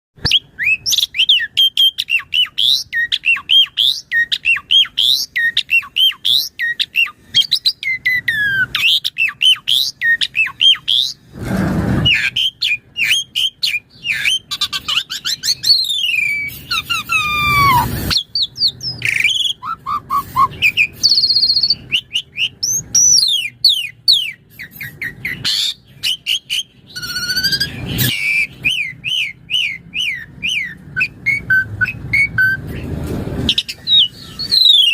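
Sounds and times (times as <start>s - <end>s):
starling singing: 0.2s - 11.3s, 12.0s - 34.9s
harsh raspy squawks: 0.3s - 32.5s.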